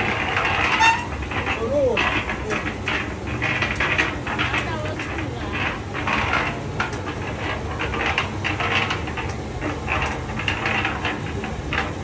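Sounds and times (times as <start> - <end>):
concrete mixer motor hum: 0.0 - 12.0
mixer drum rattling and clicking: 0.0 - 12.0.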